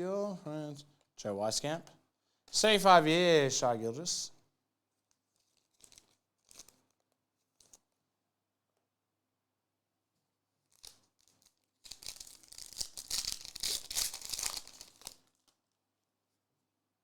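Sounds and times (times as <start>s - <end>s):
foil wrapper tearing and crinkling: 5.1s - 7.8s, 10.7s - 15.6s.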